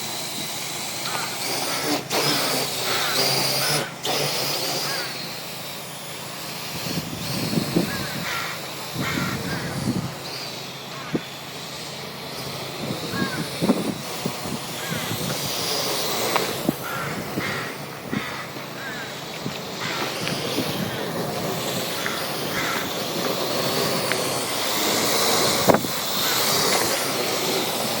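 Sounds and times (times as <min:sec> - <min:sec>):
drone motors whining: 0:00.0 - 0:28.0
wind buffeting microphone: 0:06.6 - 0:10.3, 0:12.4 - 0:28.0.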